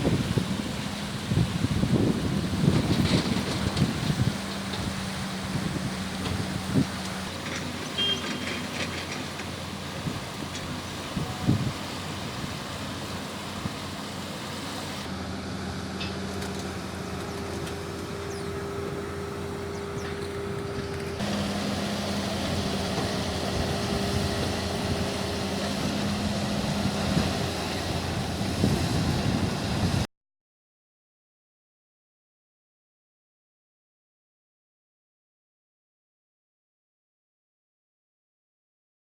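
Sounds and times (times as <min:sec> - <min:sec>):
engine humming: 0:00.0 - 0:30.1
outdoor noise: 0:00.0 - 0:30.1.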